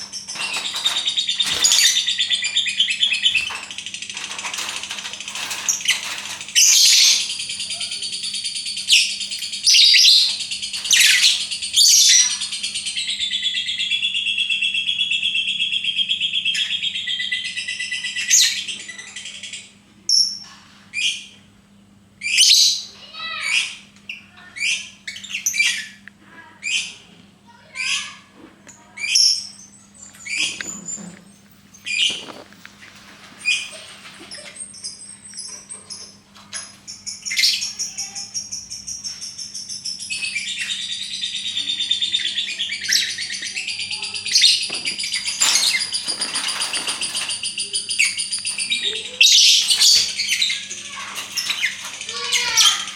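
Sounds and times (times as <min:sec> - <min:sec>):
lovebird trilling and chirping: 0:05.7 - 0:13.2.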